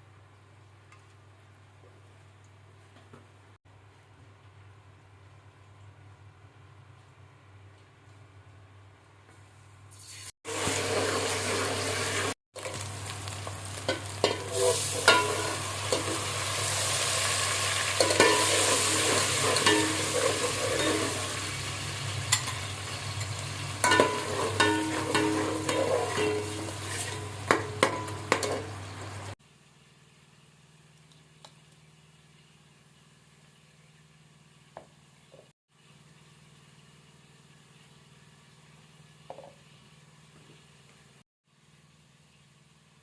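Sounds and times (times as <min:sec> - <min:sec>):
vegetables sizzling in hot oil: 0:09.9 - 0:29.4
spoon scraping and knocking on pan: 0:13.9 - 0:16.2, 0:18.0 - 0:21.4, 0:23.2 - 0:28.7.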